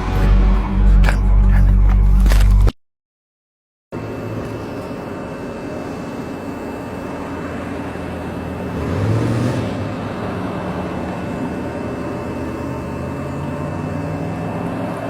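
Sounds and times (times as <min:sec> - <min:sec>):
low rumbling drone: 0:00.0 - 0:02.7.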